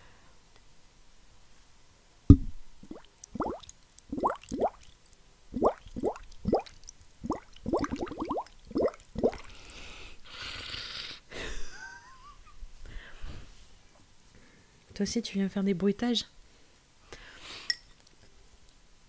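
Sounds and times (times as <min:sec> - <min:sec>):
bubbles gurgling through a straw: 0:02.8 - 0:04.9, 0:05.6 - 0:09.6.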